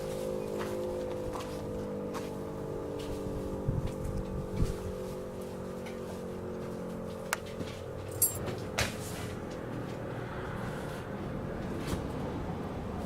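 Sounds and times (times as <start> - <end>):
mechanical fire siren: 0.0 - 11.7.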